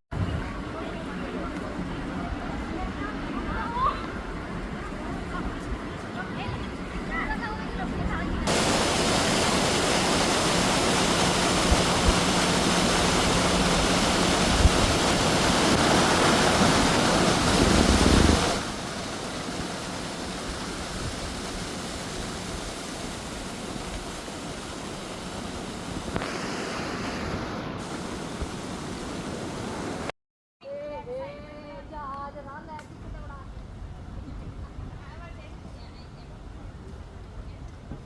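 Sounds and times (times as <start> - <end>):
steady rushing noise: 7.1 - 30.1.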